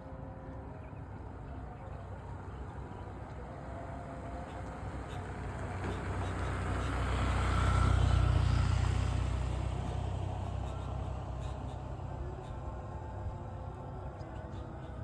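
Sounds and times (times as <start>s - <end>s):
vehicle driving past: 4.9s - 12.1s.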